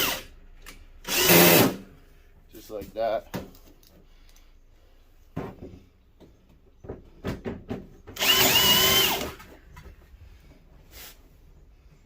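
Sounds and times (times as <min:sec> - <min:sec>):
power drill driving a screw: 0:00.0 - 0:00.3, 0:01.0 - 0:01.8, 0:08.2 - 0:09.5.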